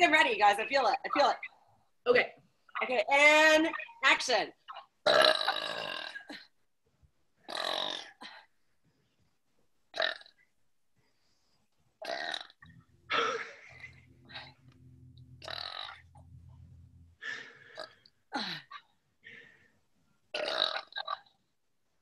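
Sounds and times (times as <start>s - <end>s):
woman burping: 4.7s - 6.5s, 7.5s - 8.4s, 12.0s - 14.6s, 15.4s - 16.0s, 17.7s - 18.9s, 20.3s - 21.3s.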